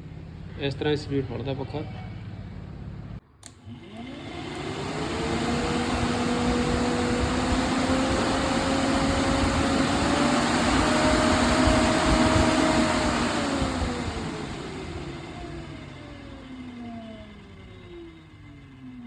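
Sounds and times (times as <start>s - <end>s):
cooling fan whining: 2.2s - 19.0s
fan switch click: 3.4s - 7.3s.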